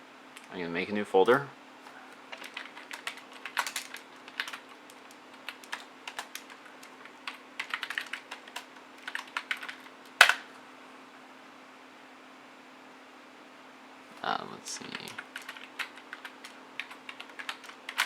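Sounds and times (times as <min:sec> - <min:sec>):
computer keyboard typing: 0:02.3 - 0:10.5, 0:14.9 - 0:18.0.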